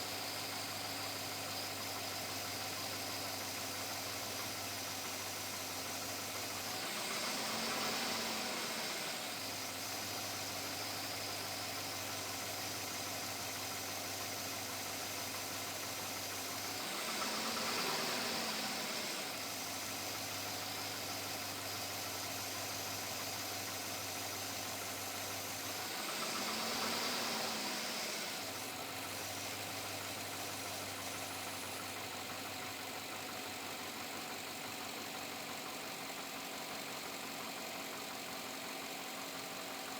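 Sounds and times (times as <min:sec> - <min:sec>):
engine idling and revving: 0:00.0 - 0:39.9
engine knock: 0:00.0 - 0:39.9.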